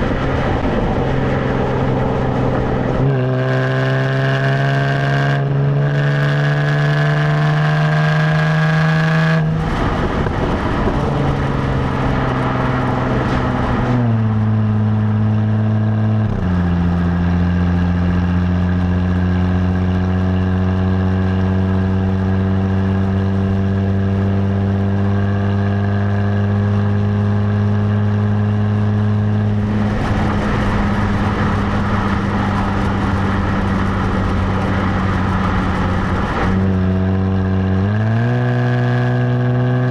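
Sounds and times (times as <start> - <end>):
car engine exhaust revving: 0.0 - 39.9
rushing noise: 29.4 - 37.0.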